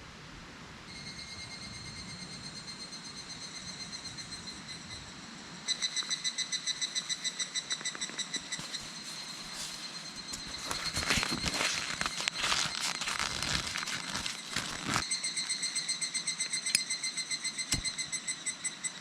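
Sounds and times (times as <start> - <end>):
cicadas calling with pulsing trill: 0.9 - 19.0
rustling and crackling: 7.9 - 15.6.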